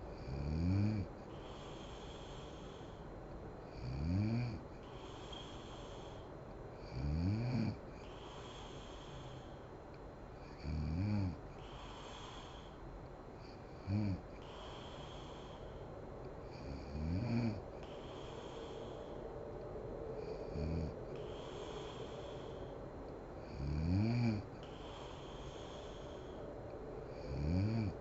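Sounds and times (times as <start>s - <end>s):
faint hiss: 0.0s - 28.0s
woman snoring: 0.2s - 2.5s, 3.8s - 6.2s, 6.8s - 7.8s, 16.6s - 18.8s, 23.4s - 26.4s, 27.1s - 28.0s.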